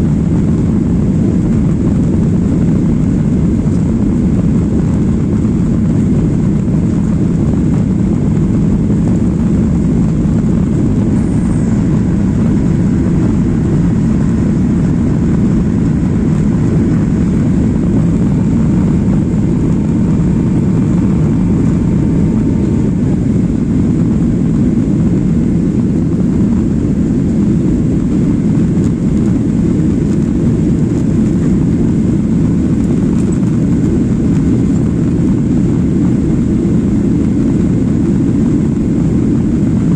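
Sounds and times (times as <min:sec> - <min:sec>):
jet airliner cabin rumble: 0:00.0 - 0:39.9.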